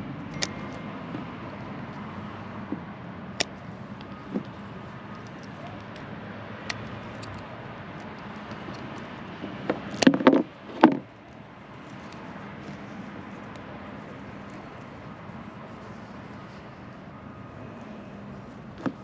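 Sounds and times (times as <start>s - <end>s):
small clicks: 0.3s - 0.8s.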